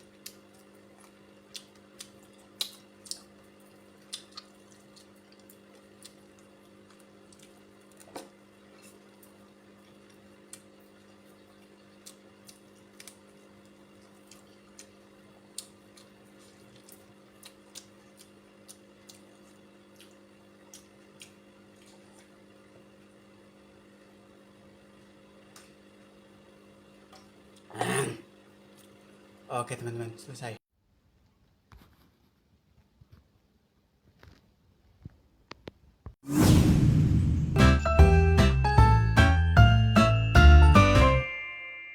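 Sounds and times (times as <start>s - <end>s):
chewing and mouth noises: 0.0s - 22.4s
low electrical hum: 0.0s - 36.2s.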